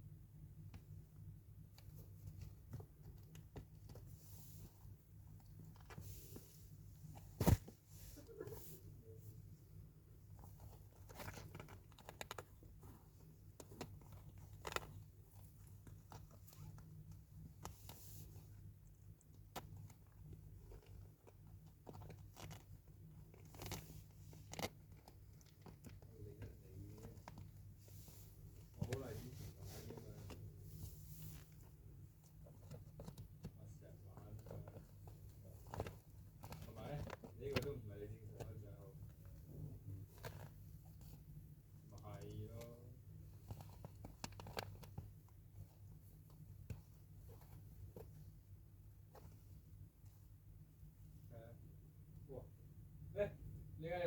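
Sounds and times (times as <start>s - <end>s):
low room hum: 0.0s - 54.0s
cat chewing and crunching: 18.8s - 27.6s.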